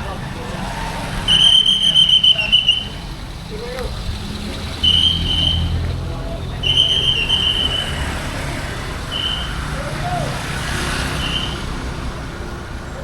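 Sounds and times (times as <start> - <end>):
bus engine running: 0.0 - 13.0
bus horn whistling notes: 9.1 - 9.7, 11.1 - 11.8.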